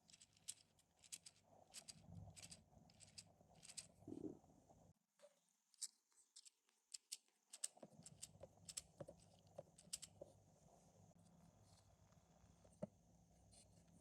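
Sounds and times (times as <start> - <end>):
plastic parts clicking together: 0.1 - 3.9, 5.7 - 10.2.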